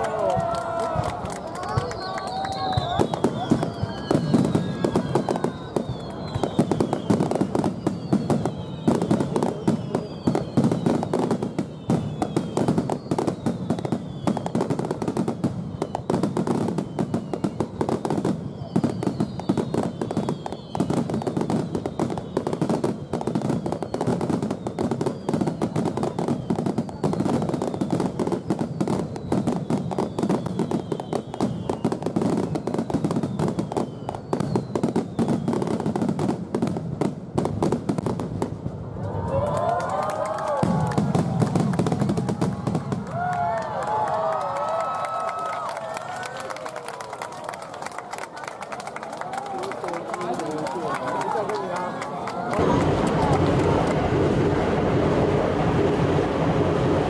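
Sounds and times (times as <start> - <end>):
falling whistle tones: 1.3 - 14.6, 15.6 - 28.0, 28.7 - 35.6.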